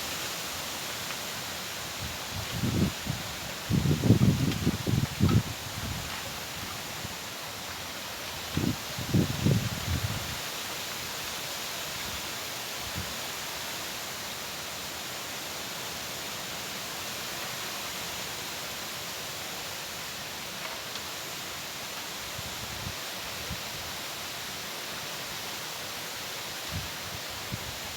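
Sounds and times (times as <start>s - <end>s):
wind hissing: 0.0s - 14.8s.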